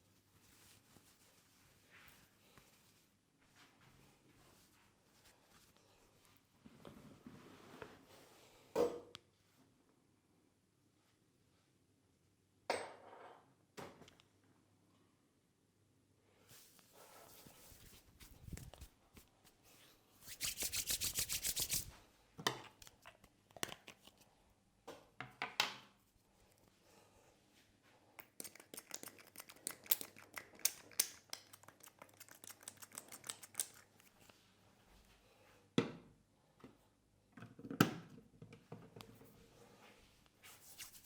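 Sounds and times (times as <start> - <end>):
hands rubbing hair and skin: 16.5 - 22.0, 40.3 - 41.0
fast tapping strokes: 20.3 - 21.9.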